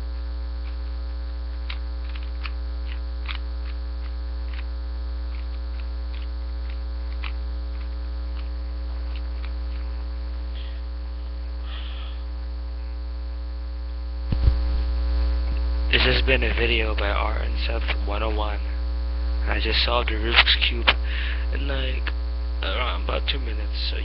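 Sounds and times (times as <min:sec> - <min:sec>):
electrical hum: 0:00.0 - 0:24.0
puzzle cube clicks: 0:01.6 - 0:04.7, 0:05.3 - 0:08.5.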